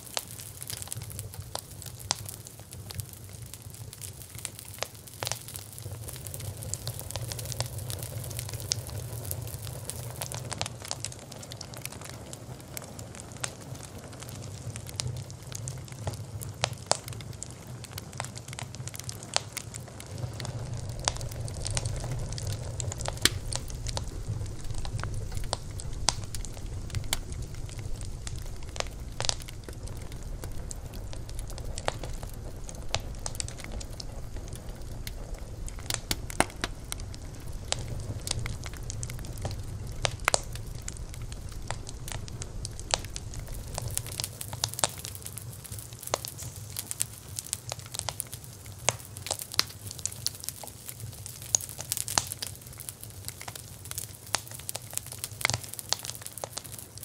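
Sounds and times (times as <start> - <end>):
wood fire crackling: 0.0 - 57.0
low rumble: 19.7 - 45.4.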